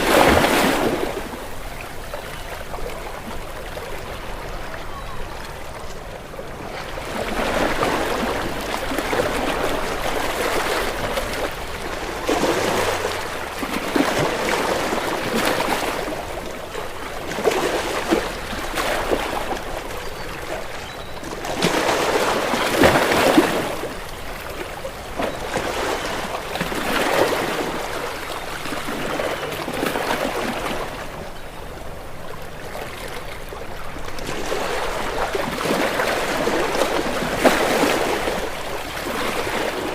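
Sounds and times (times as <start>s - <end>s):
waves breaking on rocks: 0.0s - 4.8s, 6.8s - 31.2s, 32.4s - 39.9s.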